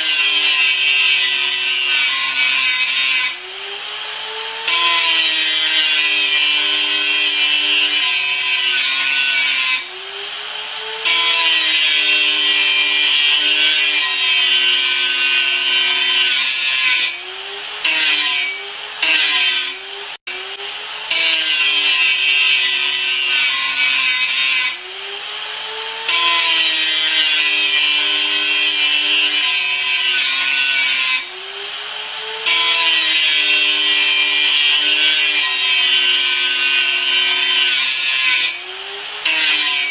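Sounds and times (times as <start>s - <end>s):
electric grinder grinding: 0.0s - 39.9s.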